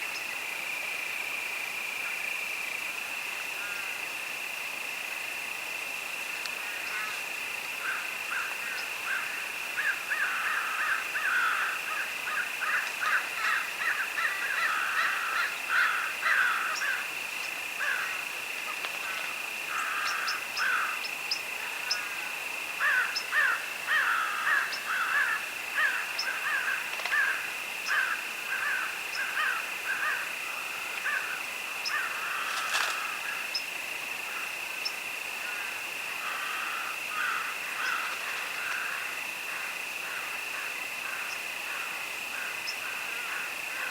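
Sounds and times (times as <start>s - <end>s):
crickets trilling: 0.0s - 43.9s.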